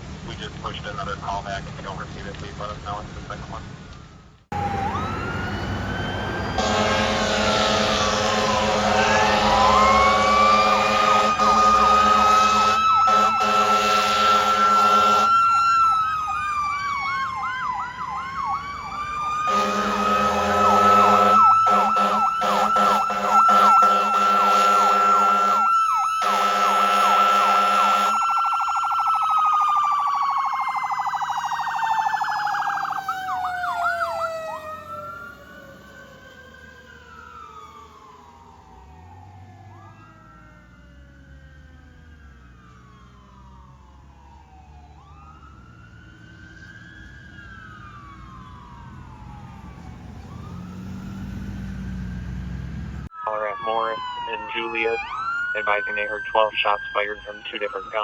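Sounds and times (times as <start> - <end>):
fire engine siren wailing: 0.6 - 58.0
air horn blasts: 6.6 - 15.3, 19.5 - 28.2.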